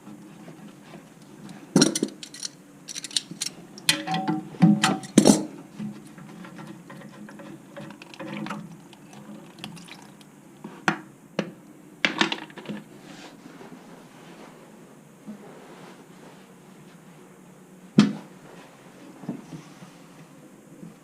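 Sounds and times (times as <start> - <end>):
hand tools clinking and knocking: 1.8 - 5.5.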